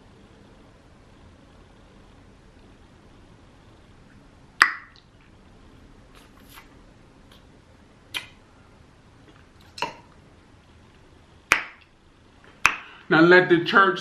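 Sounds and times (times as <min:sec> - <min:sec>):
sharp short snaps: 0:08.1 - 0:08.4, 0:12.6 - 0:13.0.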